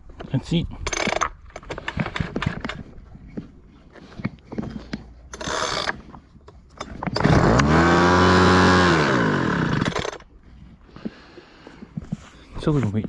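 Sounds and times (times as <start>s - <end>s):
starter cord rasp: 0.9s - 2.9s, 4.0s - 10.3s
leaf blower engine starting: 4.8s - 6.1s, 6.8s - 10.3s.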